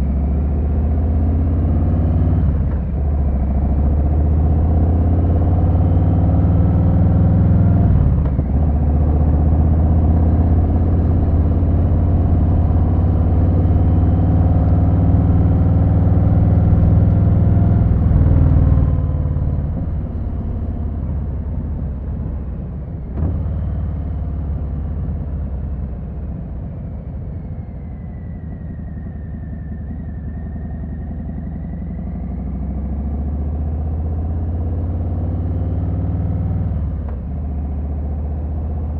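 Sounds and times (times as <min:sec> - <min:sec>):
motorcycle engine running: 0:05.2 - 0:26.8.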